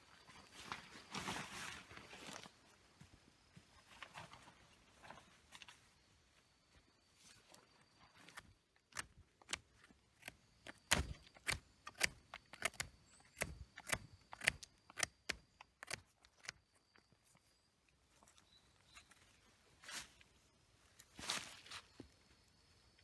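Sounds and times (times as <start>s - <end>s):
sharp clicks and knocks: 10.2s - 16.6s.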